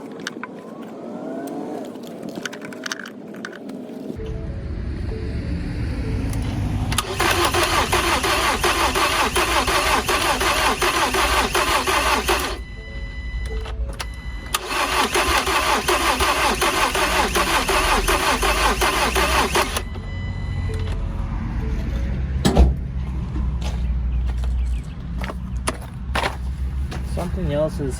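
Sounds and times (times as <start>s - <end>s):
engine cranking on starter: 6.3s - 12.6s, 14.0s - 19.9s
short electronic beeps: 12.4s - 14.7s, 19.7s - 21.1s
thump: 22.4s - 22.8s.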